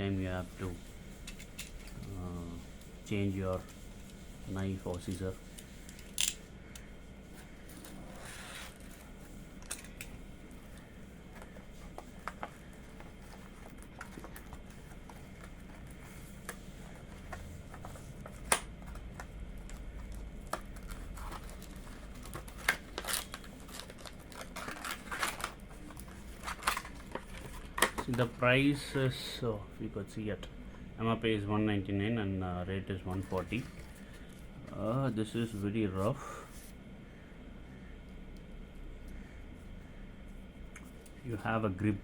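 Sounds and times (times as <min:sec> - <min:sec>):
low steady hum: 0:00.0 - 0:42.0
packaging rustling: 0:10.6 - 0:28.4.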